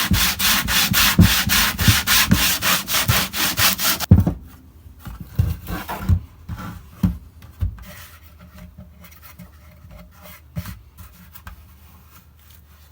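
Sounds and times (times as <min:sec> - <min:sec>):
wood being rubbed: 0:00.0 - 0:04.1
scrapes and knocks on wood: 0:00.0 - 0:12.9.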